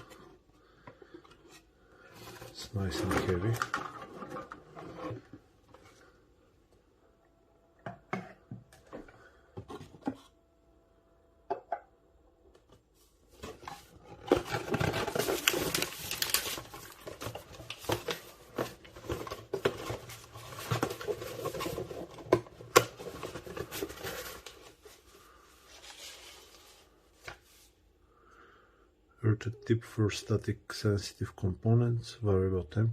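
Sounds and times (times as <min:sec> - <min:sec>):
packaging rustling and scraping: 0:00.0 - 0:06.2, 0:13.3 - 0:27.8.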